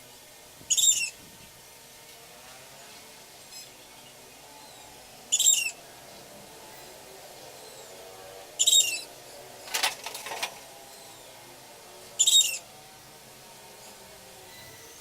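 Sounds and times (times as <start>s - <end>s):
high bird calls: 5.3s - 5.8s, 12.2s - 12.6s
rattle of clicks: 9.7s - 10.7s.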